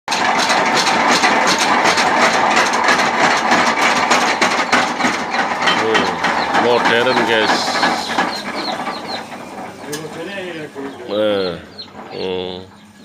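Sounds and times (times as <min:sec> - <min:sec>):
power hammer striking rapidly: 0:00.1 - 0:10.0.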